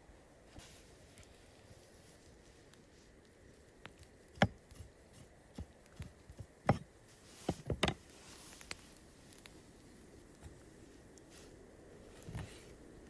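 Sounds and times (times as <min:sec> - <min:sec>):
sharp knocks and clicks: 0:04.3 - 0:06.9.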